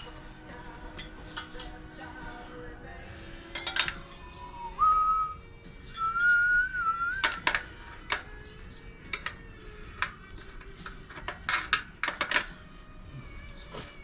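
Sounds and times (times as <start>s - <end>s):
faint background music: 0.0s - 14.0s
tools clinking on wheel: 0.8s - 2.2s, 3.4s - 4.4s, 7.2s - 12.7s
man whistling a tune: 4.2s - 7.5s.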